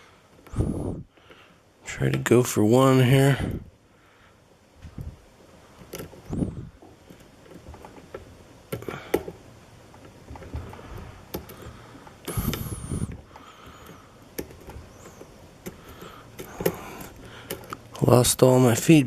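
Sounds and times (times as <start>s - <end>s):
scraping handling noise: 4.8s - 18.2s.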